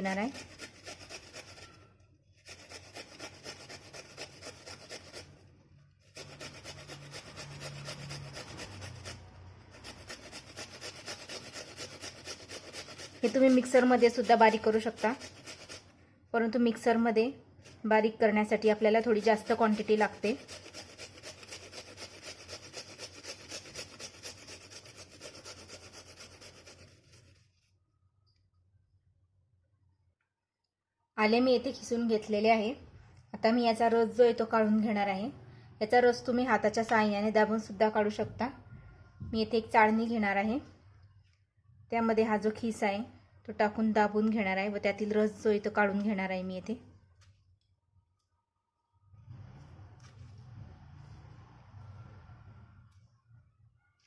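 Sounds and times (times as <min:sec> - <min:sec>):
ginger grated on hand grater: 0:00.0 - 0:15.9, 0:17.6 - 0:27.5.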